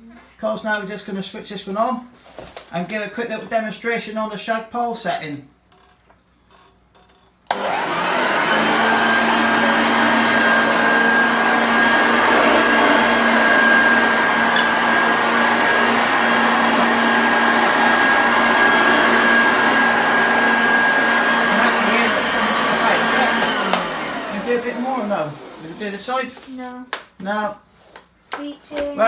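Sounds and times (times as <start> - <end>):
vacuum cleaner running: 7.5 - 26.4.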